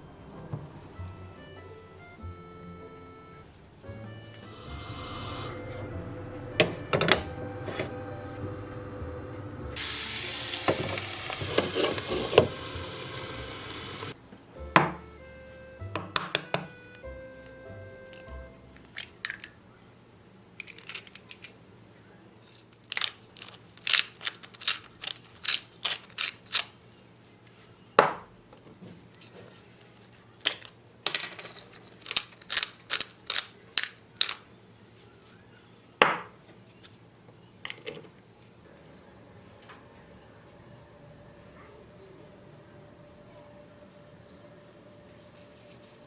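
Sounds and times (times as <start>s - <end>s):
utensils clicking on dishes: 9.8s - 14.2s.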